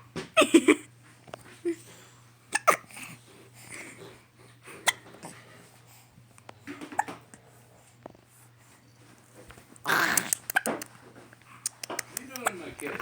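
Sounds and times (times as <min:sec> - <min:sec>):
person hiccuping: 0:02.5 - 0:02.9.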